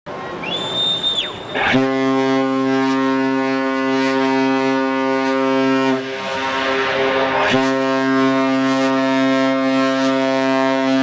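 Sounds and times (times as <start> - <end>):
ship's horn deep blast: 1.5 - 11.0.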